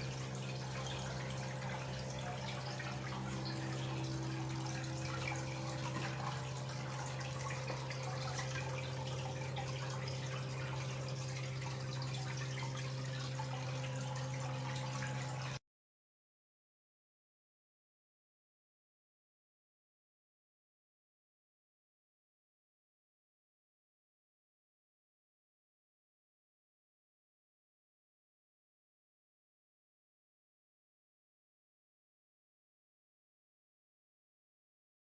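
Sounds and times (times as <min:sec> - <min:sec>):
steady low hum: 0:00.0 - 0:15.6
water dripping and trickling: 0:00.0 - 0:15.6.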